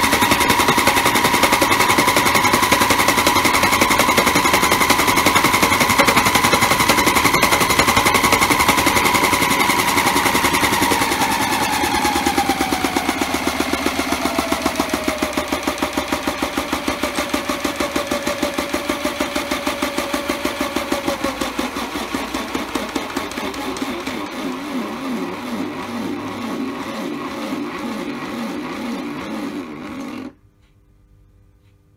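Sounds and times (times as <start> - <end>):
drum knocking rapidly: 0.0 - 30.4
small motor whining: 19.6 - 30.4.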